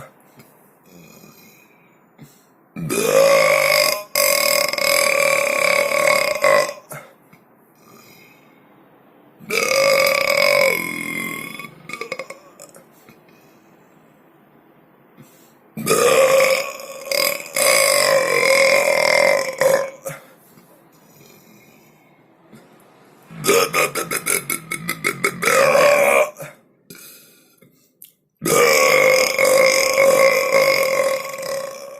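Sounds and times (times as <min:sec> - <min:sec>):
person burping loudly: 0:00.9 - 0:01.7, 0:02.8 - 0:07.2, 0:09.4 - 0:12.9, 0:15.8 - 0:20.4, 0:23.3 - 0:27.2, 0:28.4 - 0:31.9.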